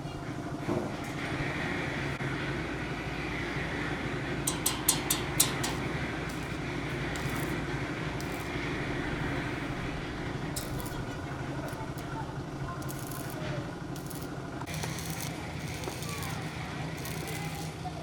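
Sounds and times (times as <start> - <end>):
engine-like hum: 0.0 - 18.0
sharp metallic clicks: 4.5 - 6.6.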